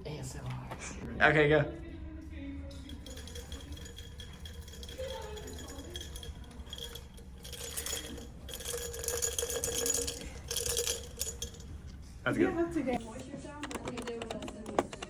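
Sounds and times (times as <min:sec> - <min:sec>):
small hard objects rattling: 0:02.9 - 0:11.8.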